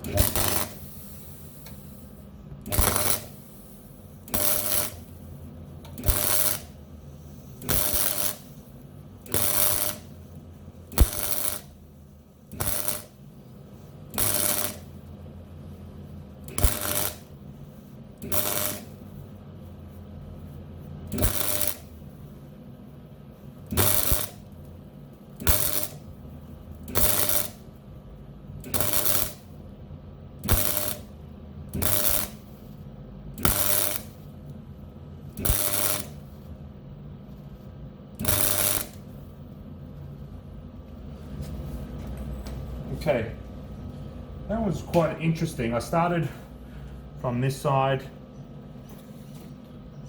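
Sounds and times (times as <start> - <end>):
sharp snap of arc striking: 0.0 - 0.8, 2.7 - 3.4, 5.9 - 6.7, 7.6 - 8.4, 9.3 - 10.1, 10.9 - 11.7, 12.5 - 13.1, 14.2 - 14.9, 16.5 - 17.2, 21.1 - 21.9, 23.7 - 24.4, 25.4 - 26.0, 26.9 - 27.6, 28.6 - 29.5, 30.4 - 31.1, 31.8 - 32.4, 33.4 - 34.2, 35.4 - 36.2, 38.2 - 39.1
crackling welding arc: 0.0 - 19.8, 20.9 - 22.3, 23.6 - 36.6, 37.6 - 39.4
steady low hum: 0.0 - 50.0.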